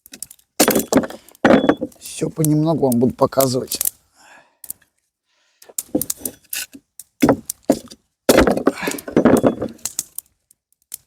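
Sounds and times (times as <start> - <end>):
dry branches cracking: 5.6 - 11.0.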